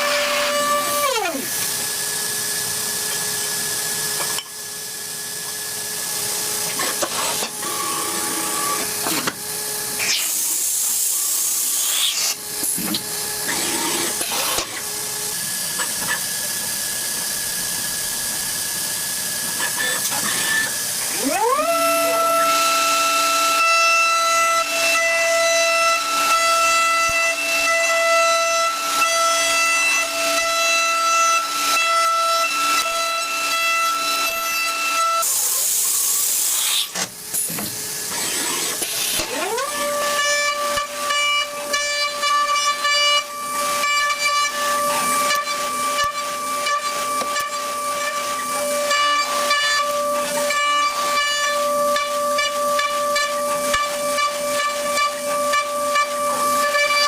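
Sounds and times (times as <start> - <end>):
loud burst of hiss: 35.2 - 39.2.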